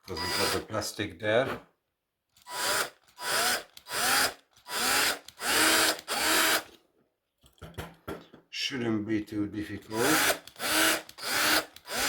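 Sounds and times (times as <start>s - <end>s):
power drill drilling metal: 0.1s - 0.7s, 2.4s - 6.7s, 9.9s - 12.0s.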